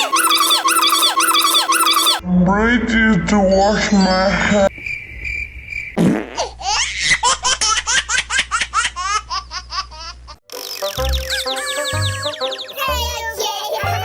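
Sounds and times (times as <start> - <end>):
children's music: 0.0 - 2.2, 10.5 - 14.0
child laughing: 11.2 - 13.8.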